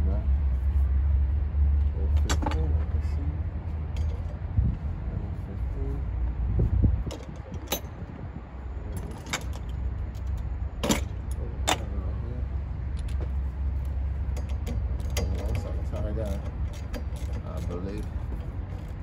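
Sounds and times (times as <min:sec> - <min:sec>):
steady low rumble: 0:00.0 - 0:19.0
metallic clinks and rattles: 0:13.8 - 0:19.0.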